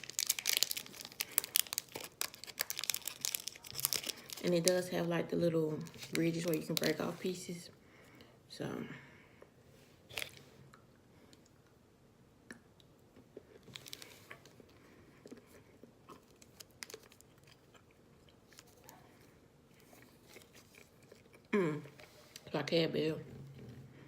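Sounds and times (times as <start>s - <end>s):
quiet chewing and crunching: 0.0s - 4.9s, 9.4s - 11.8s, 12.4s - 22.5s.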